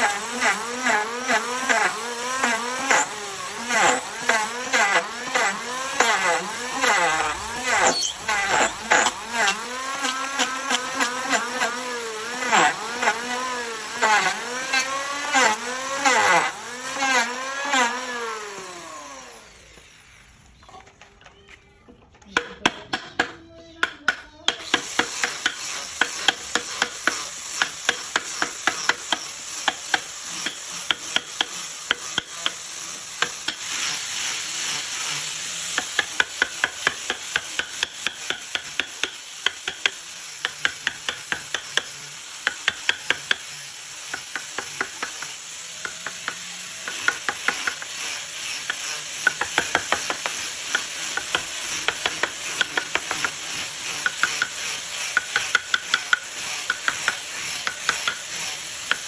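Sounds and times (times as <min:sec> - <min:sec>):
chisel scraping hiss: 0:00.0 - 0:18.0, 0:24.5 - 0:59.0
chisel tapping wood: 0:22.3 - 0:32.6, 0:55.2 - 0:58.2.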